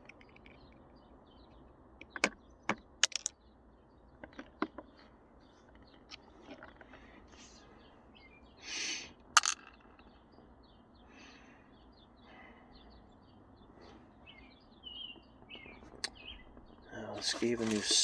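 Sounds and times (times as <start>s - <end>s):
small birds chirping faintly: 0.0s - 18.0s
short rustle: 16.9s - 18.0s.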